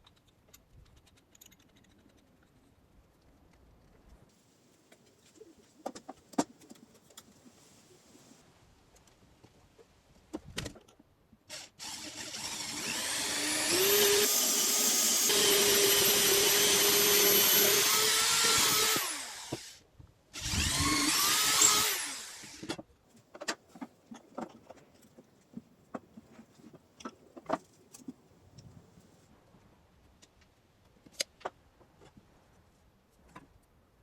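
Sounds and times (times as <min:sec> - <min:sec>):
knocks and clicks of handling: 0:04.9 - 0:07.4, 0:23.1 - 0:29.0
power tool motor running: 0:11.5 - 0:19.7, 0:20.4 - 0:22.8.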